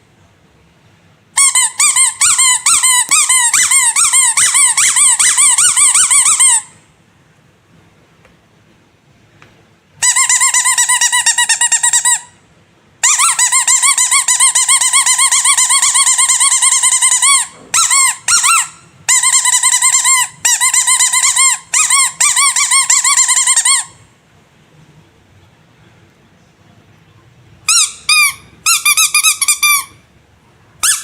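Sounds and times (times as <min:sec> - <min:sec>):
squeaky rubber toy squeaking: 0:01.4 - 0:06.8, 0:10.0 - 0:12.4, 0:13.0 - 0:24.1, 0:27.7 - 0:30.1, 0:30.8 - 0:31.0.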